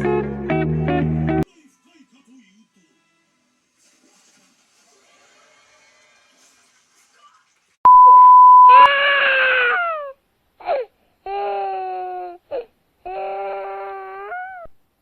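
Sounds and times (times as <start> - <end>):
loud electronic beep: 7.9 - 8.8.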